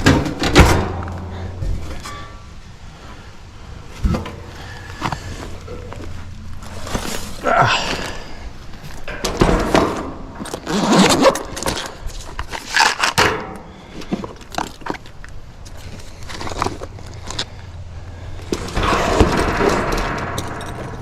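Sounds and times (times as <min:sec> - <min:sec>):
steady low hum: 0:00.0 - 0:10.7, 0:13.3 - 0:21.0
metal tools clinking and scraping: 0:01.7 - 0:02.6, 0:19.1 - 0:21.0.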